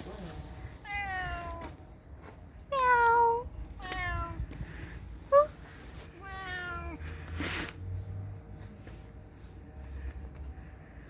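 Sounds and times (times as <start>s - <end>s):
cat meowing: 0.8s - 1.7s, 2.7s - 4.5s, 5.3s - 7.1s.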